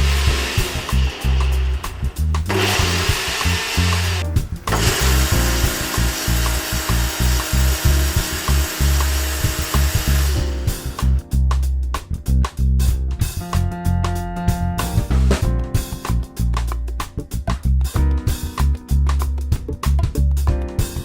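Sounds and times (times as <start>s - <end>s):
machine rushing noise: 0.0s - 11.2s
background music with bass beat: 0.0s - 21.0s.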